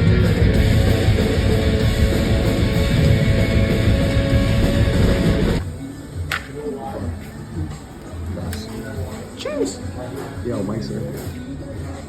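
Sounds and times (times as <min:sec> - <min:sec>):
loud guitar rock music: 0:00.0 - 0:05.6.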